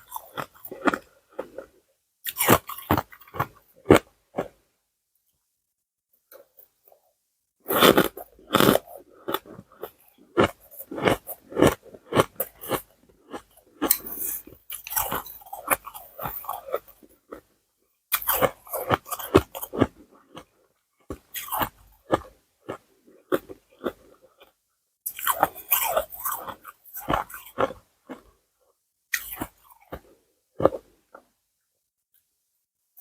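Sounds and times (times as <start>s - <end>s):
ice being chewed: 0.0s - 4.6s, 7.7s - 17.5s, 18.1s - 28.4s, 29.2s - 31.3s.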